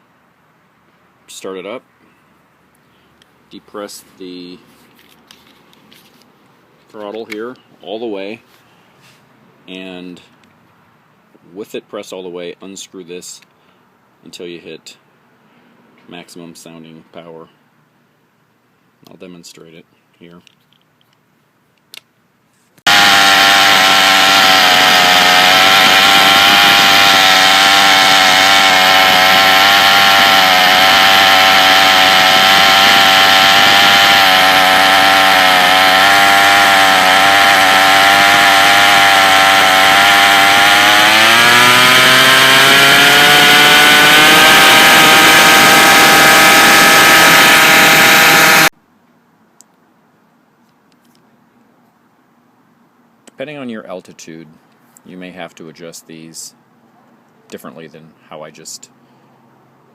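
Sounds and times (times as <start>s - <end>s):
string trimmer engine running: 22.9s - 48.7s.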